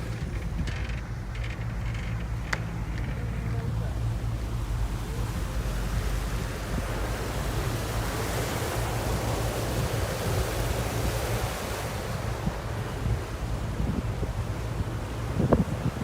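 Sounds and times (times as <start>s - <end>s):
low rumble: 0.0s - 9.6s
water from a moving boat: 0.0s - 16.0s
wind on microphone: 0.0s - 16.0s.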